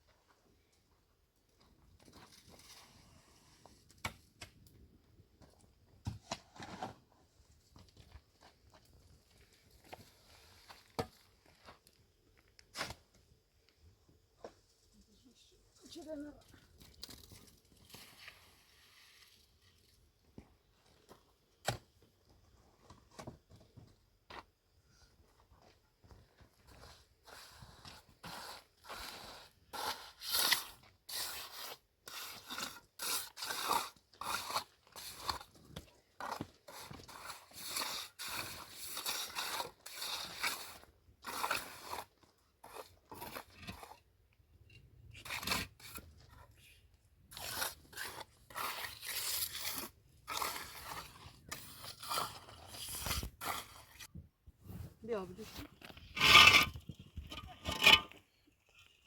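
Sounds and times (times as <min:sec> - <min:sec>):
scraping and crunching strokes: 0:47.2 - 0:54.1, 0:54.7 - 0:59.0.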